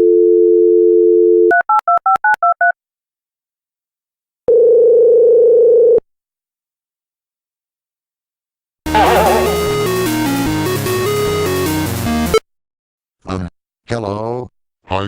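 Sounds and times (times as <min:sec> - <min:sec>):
telephone dial tone: 0:04.5 - 0:06.0
telephone ringing tone: 0:04.5 - 0:06.0.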